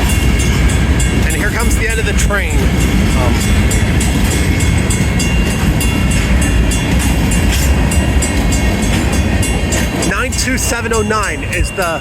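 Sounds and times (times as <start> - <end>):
crossing bell ringing: 0.0 - 12.0
train wheels rumbling on rail: 0.0 - 12.0.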